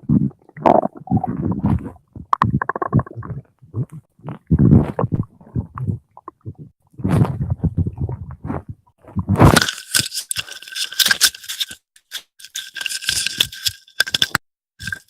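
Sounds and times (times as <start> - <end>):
stomach gurgling: 0.0 - 9.8
scratchy rustling and scraping: 7.0 - 15.0.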